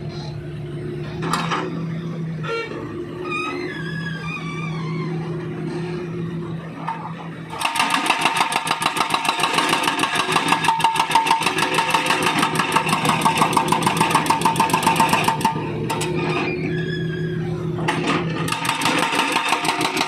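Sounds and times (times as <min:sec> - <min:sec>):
diesel engine running: 0:00.0 - 0:20.0
hydraulic breaker hammering asphalt: 0:07.5 - 0:16.0, 0:18.3 - 0:20.0.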